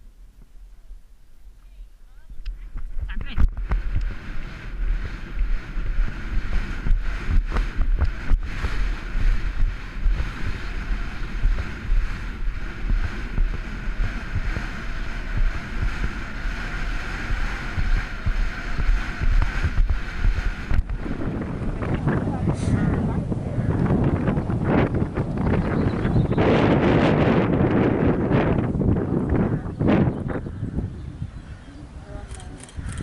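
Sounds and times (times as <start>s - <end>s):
wind buffeting microphone: 0.0s - 33.0s
sharp clicks: 32.3s - 33.0s.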